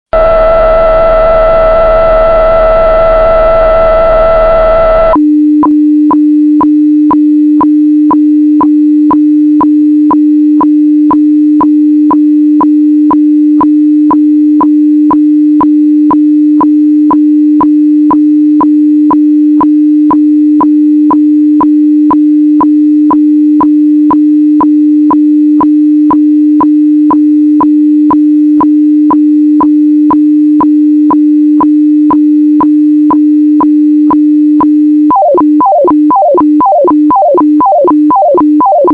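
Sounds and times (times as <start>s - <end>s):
harsh buzzing radio tone: 0.2s - 9.0s, 33.2s - 38.9s
steady low tone with ticks: 5.6s - 38.9s.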